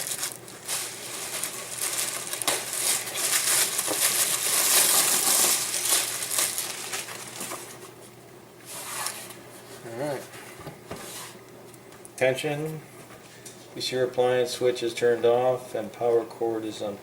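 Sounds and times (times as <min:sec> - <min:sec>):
packaging crinkling and rustling: 0:00.0 - 0:08.0.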